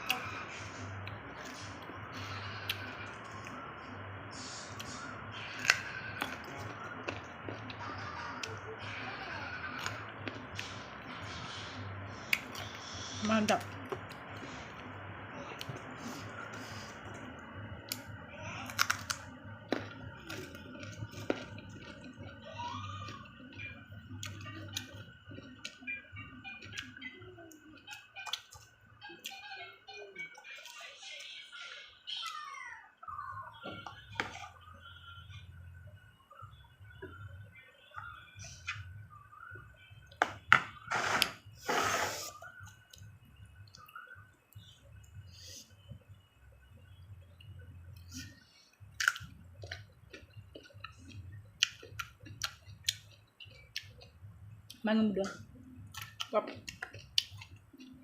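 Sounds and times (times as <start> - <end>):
crunchy chewing of raw produce: 4.6 - 11.3, 17.8 - 25.8, 48.0 - 54.8
crisp fruit crunching: 17.9 - 22.4
wet chewing: 48.9 - 54.8, 55.8 - 58.0.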